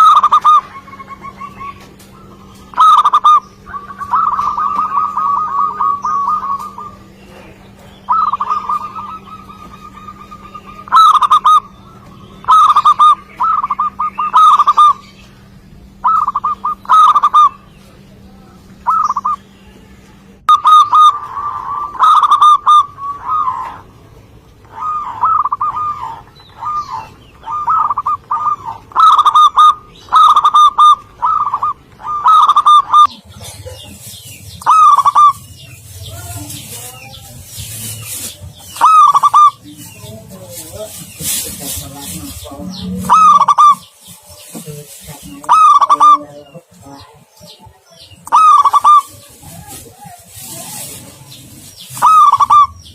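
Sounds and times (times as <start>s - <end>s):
dove cooing: 0.0s - 18.0s, 18.8s - 19.5s, 20.5s - 52.9s
small birds chirping: 0.0s - 52.9s.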